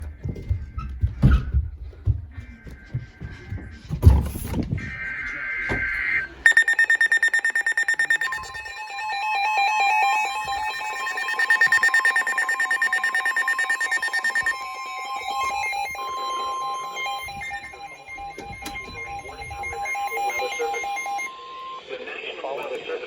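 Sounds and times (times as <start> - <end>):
electronic alarm tone: 5.0 - 21.8.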